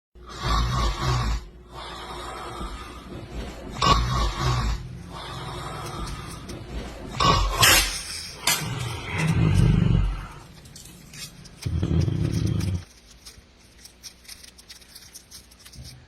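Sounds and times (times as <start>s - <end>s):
person snoring: 0.2s - 7.6s.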